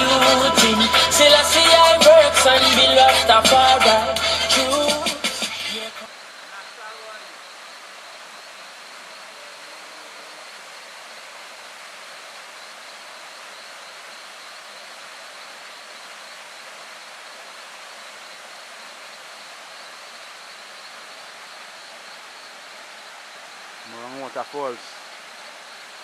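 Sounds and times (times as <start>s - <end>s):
thin high whine: 0.0s - 6.1s
waterfall rushing: 0.0s - 26.0s.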